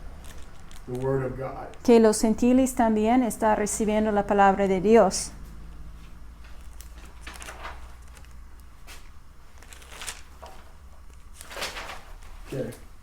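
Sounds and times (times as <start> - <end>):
steady low hum: 0.0 - 13.0
faint rustles and clicks: 5.4 - 12.9.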